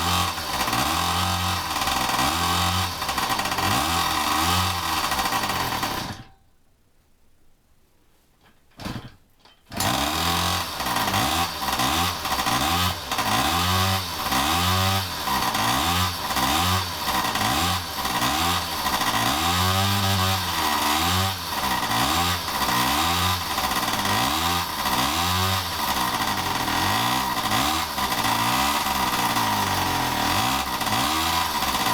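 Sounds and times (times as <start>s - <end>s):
two-stroke moped engine revving: 0.0s - 6.3s, 9.7s - 31.9s.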